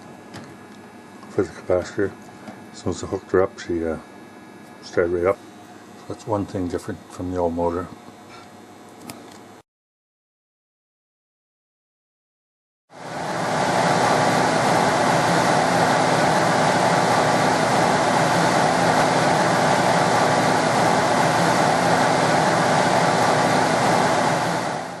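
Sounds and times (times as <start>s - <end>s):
blower motor running: 12.9s - 25.0s.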